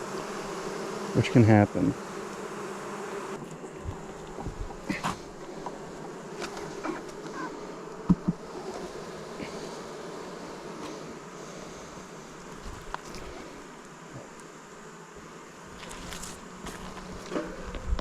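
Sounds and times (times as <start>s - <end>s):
bees buzzing in a hive: 0.0s - 18.0s.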